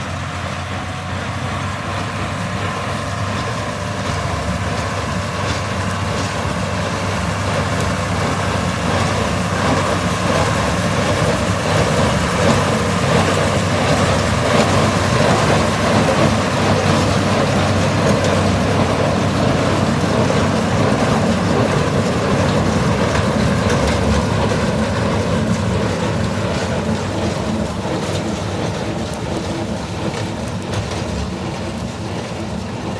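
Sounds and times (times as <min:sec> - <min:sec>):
tractor and baler running: 0:00.0 - 0:32.9.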